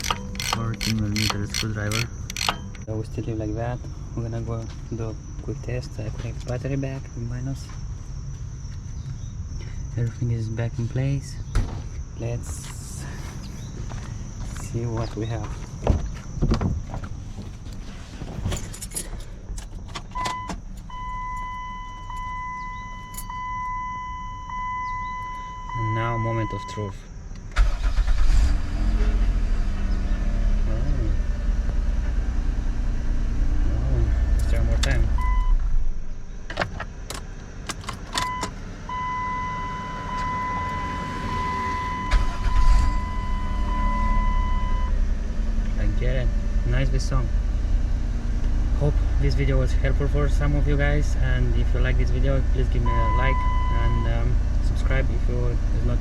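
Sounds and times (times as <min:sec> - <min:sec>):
starter cranking engine: 0:00.0 - 0:02.8, 0:27.6 - 0:28.4
keys jangling in ignition: 0:00.0 - 0:02.9, 0:18.4 - 0:23.8, 0:36.6 - 0:38.5
dashboard warning chime: 0:20.2 - 0:26.9, 0:38.3 - 0:44.9, 0:52.8 - 0:54.2.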